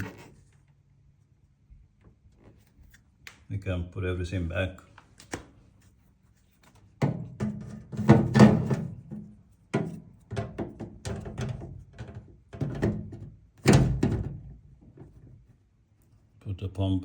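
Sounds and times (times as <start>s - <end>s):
plastic parts knocking and clunking: 6.8s - 15.4s.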